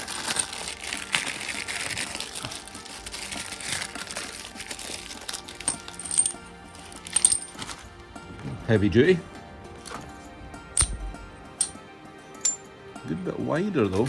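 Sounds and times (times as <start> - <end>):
small metal parts clinking: 0.0 - 2.2, 3.5 - 7.8, 10.8 - 11.8, 12.4 - 12.7
packaging rustling: 0.0 - 7.9
background music: 0.0 - 14.0.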